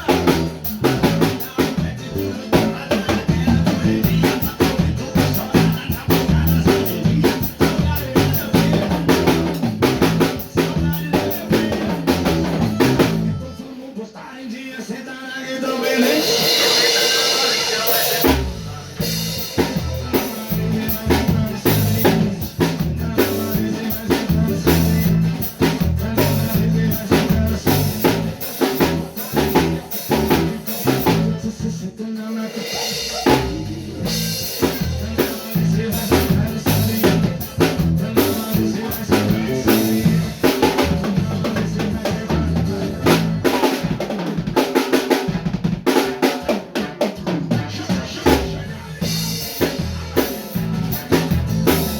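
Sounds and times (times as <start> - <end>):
bass guitar notes: 0.0 - 13.6, 18.2 - 31.8, 33.0 - 43.6, 48.2 - 51.9
drum kit playing: 0.0 - 14.0, 15.5 - 51.9.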